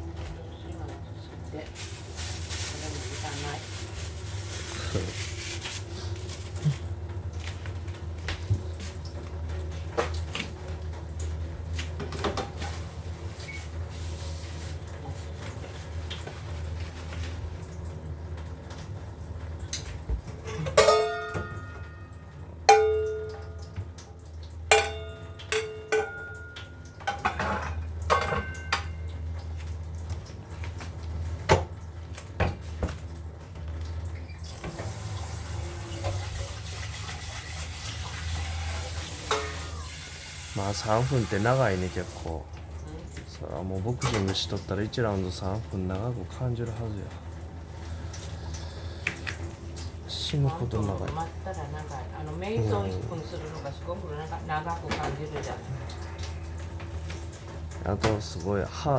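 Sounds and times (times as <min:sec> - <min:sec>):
water running from tap: 0:00.0 - 0:58.9
dishes and pots clinking: 0:19.7 - 0:24.0, 0:24.6 - 0:29.6, 0:35.8 - 0:40.1.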